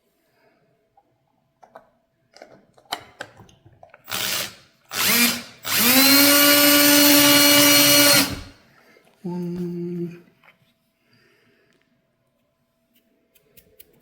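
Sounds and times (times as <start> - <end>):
power drill whining: 4.1 - 8.6.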